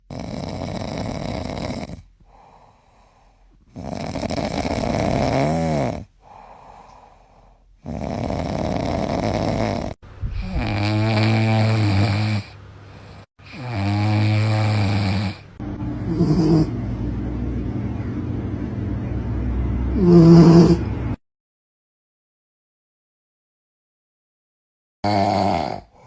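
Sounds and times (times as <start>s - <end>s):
dog breathing: 0.0s - 13.6s, 14.8s - 16.8s
dog snoring: 0.0s - 16.8s, 19.9s - 20.9s, 25.0s - 26.0s.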